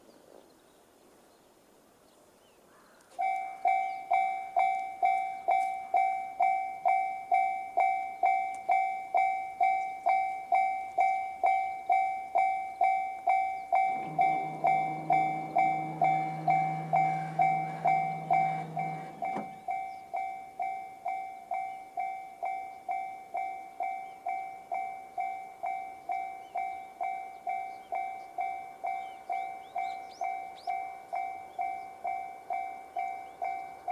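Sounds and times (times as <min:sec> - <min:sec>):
level crossing electronic alarm: 0:03.2 - 0:33.9
low steady hum: 0:12.3 - 0:20.2.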